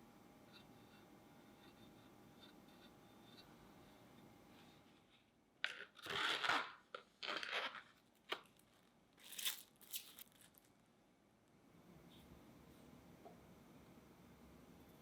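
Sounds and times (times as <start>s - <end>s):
plastic film tearing and crinkling: 5.7s - 10.7s.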